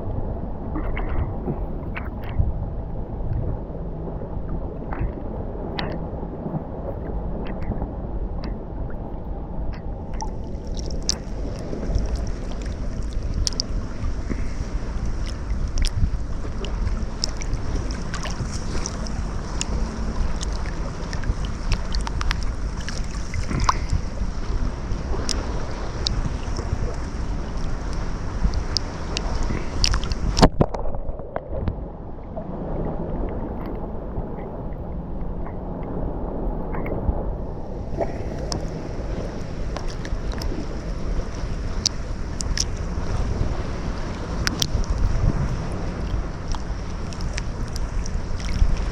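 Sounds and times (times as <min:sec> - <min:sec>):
waves washing onto shore: 0:00.0 - 0:48.9
wind rumbling on microphone: 0:00.0 - 0:48.9
sharp water splashes: 0:09.7 - 0:31.0, 0:37.8 - 0:48.9.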